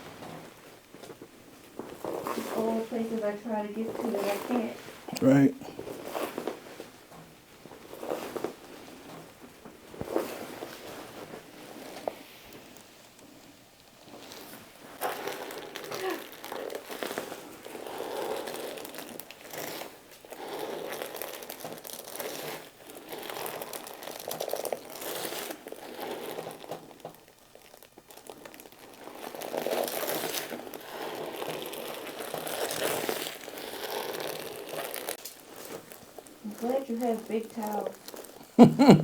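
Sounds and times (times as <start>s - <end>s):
hands rubbing skin and fabric: 0.0s - 7.0s, 7.7s - 12.9s.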